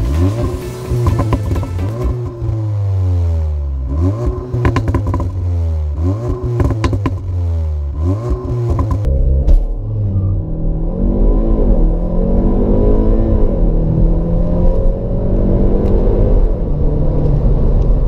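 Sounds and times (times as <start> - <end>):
exhaust cracks: 0.0 - 10.1
car engine revving: 0.0 - 18.0.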